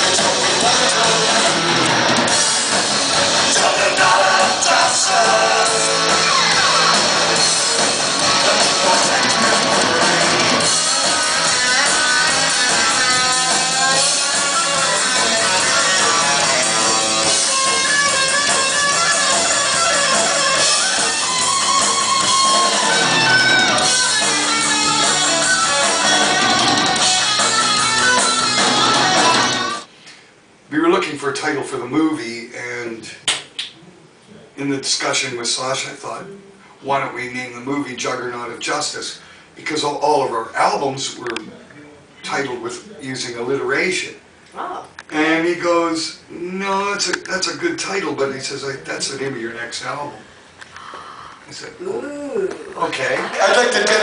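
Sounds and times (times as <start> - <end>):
loud rock music: 0.0 - 29.9.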